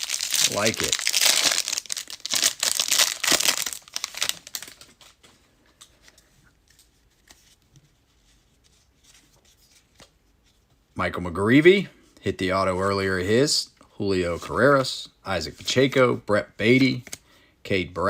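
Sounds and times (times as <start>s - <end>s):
foil wrapper tearing and crinkling: 0.0s - 5.0s
cards being sorted: 0.0s - 7.4s.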